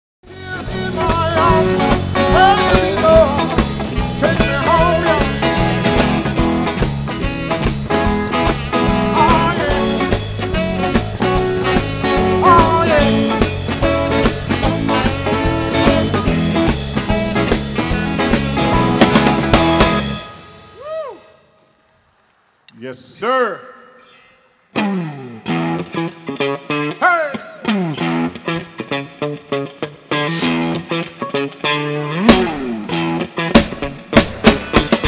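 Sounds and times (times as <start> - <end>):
bass: 0.2 - 21.2, 27.7 - 35.0
rock music: 0.2 - 21.4, 24.6 - 35.0
steady drum beat: 0.3 - 20.2, 32.3 - 32.8, 33.6 - 35.0
electric guitar bending lead line: 0.3 - 20.6, 24.7 - 35.0.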